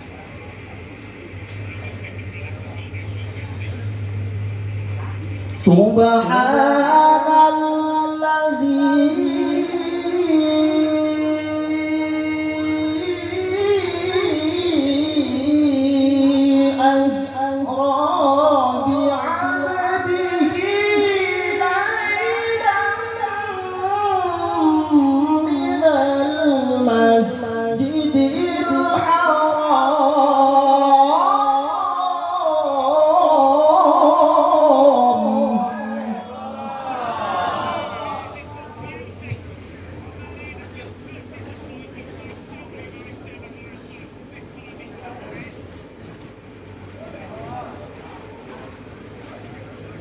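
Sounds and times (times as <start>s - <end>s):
voice chanting over a pa system: 1.4s - 45.6s.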